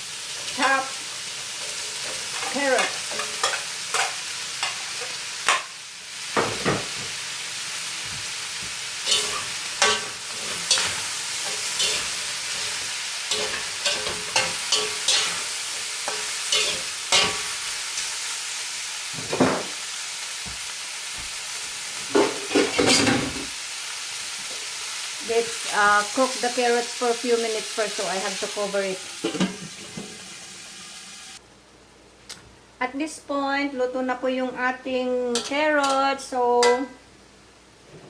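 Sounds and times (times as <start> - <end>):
food sizzling in a pan: 0.0 - 31.4
utensil scraping a pan: 9.0 - 18.1.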